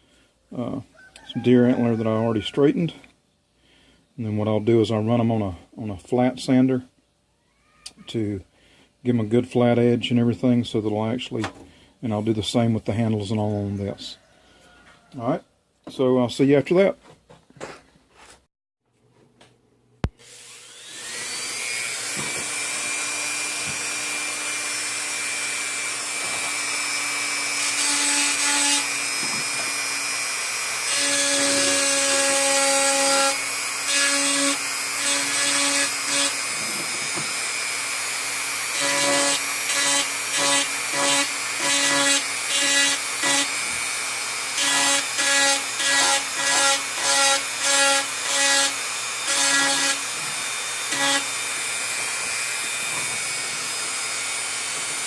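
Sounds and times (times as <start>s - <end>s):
sander whine: 20.1s - 31.1s
antler grinding on sander: 20.4s - 55.0s.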